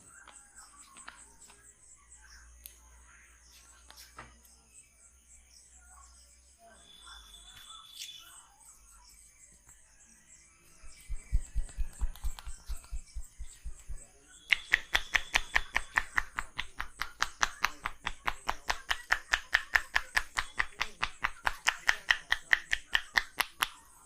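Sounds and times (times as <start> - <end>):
hands slapping body rhythmically: 10.9 - 23.9
dull low thumps: 11.0 - 14.1.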